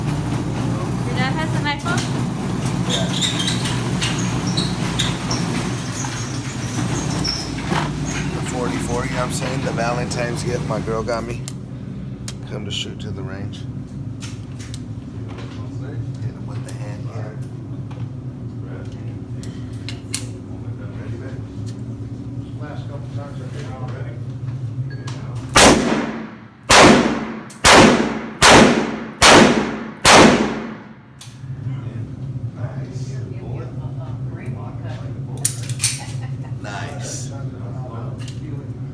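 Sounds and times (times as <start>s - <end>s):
vehicle engine drone: 0.0s - 18.6s
faint high squeaks: 2.9s - 8.5s
handgun shots with ringing tail: 25.6s - 30.9s.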